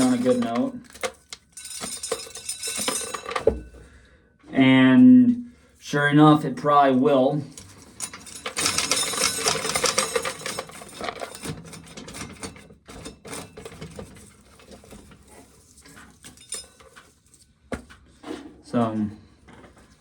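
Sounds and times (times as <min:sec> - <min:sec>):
corn sheller rattling: 0:00.0 - 0:03.5, 0:07.7 - 0:17.0.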